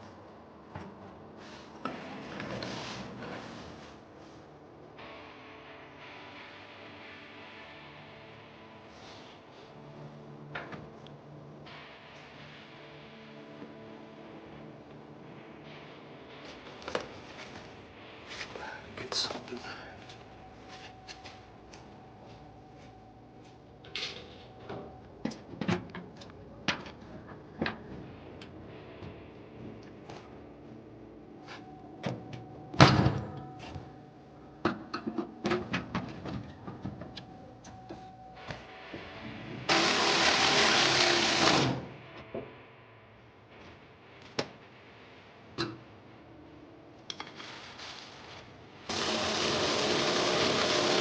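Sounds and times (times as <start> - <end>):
power tool running: 39.7 - 41.9, 48.9 - 51.0.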